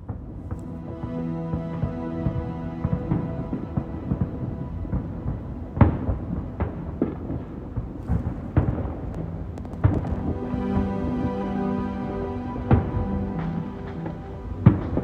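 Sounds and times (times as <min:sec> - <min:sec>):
fireworks rumbling: 0:05.2 - 0:10.3
crackle of small pops: 0:05.8 - 0:10.2.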